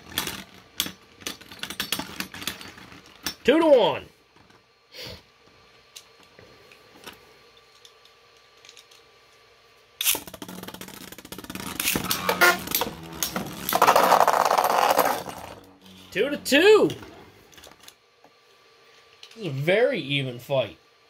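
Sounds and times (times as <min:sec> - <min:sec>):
spinning top launch rip: 0:10.0 - 0:15.7
spinning tops clattering hits: 0:10.0 - 0:16.1.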